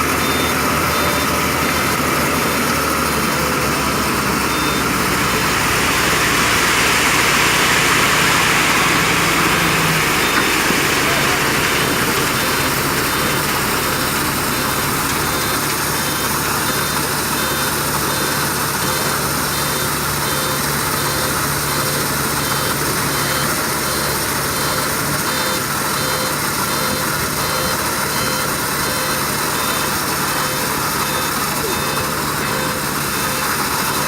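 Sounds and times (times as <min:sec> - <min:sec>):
heavy diesel engines running: 0:00.0 - 0:34.0.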